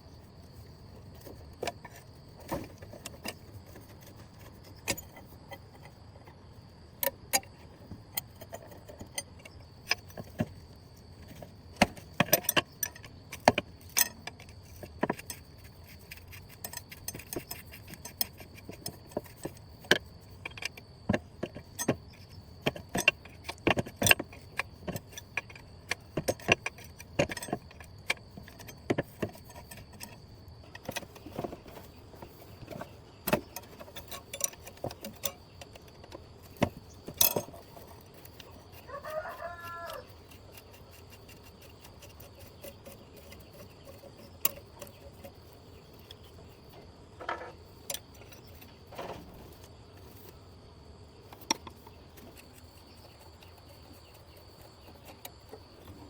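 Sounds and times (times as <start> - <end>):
metal tools clinking: 36.7 - 38.7.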